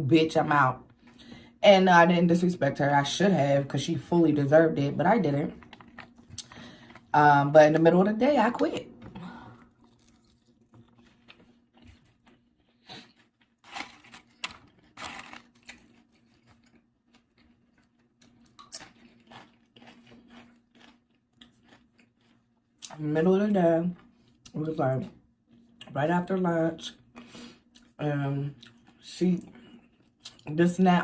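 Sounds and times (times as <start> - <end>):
crunching and mouth sounds: 5.5 - 7.1, 9.0 - 23.0, 26.9 - 30.6
person chewing food: 5.6 - 7.1, 9.0 - 23.0, 28.6 - 30.5.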